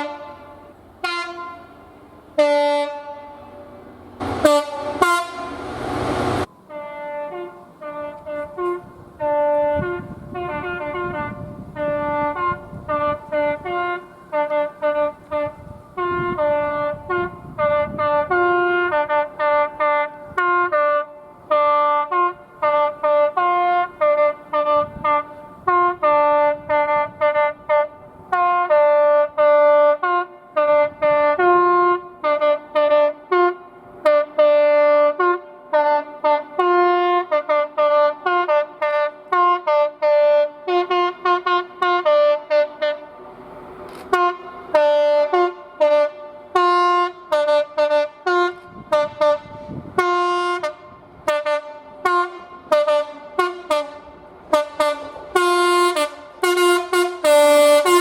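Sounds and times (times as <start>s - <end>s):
train horn short blasts: 0.0s - 58.0s
low rumble: 4.0s - 6.5s.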